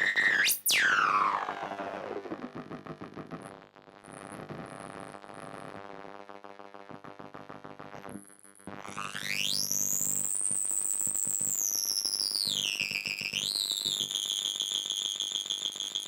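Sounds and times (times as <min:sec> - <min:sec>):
high-pitched sweeping synth tone: 0:00.2 - 0:02.2.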